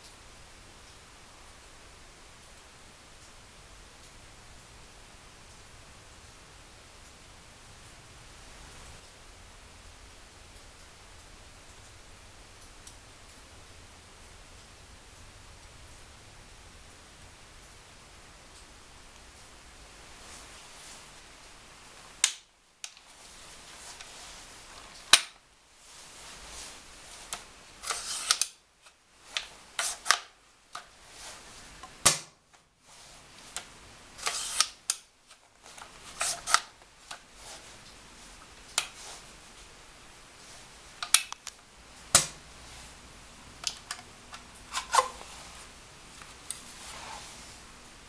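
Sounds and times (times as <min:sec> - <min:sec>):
rifle sharp snaps: 0:22.2 - 0:22.5, 0:32.0 - 0:32.4, 0:42.2 - 0:42.4.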